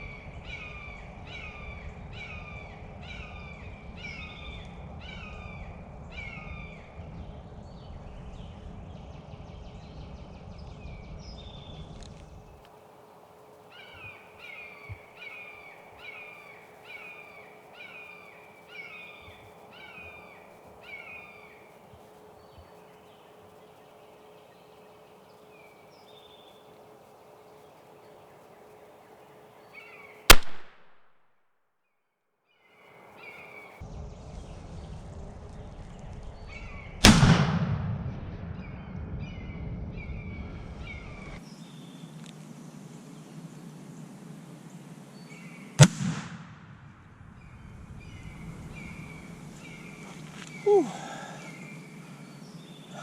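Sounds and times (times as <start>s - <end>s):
repeated bird calls: 0.0s - 30.7s, 32.6s - 33.8s, 47.4s - 53.0s
loud shotgun blast: 30.3s - 31.0s, 37.0s - 39.3s, 45.8s - 47.0s.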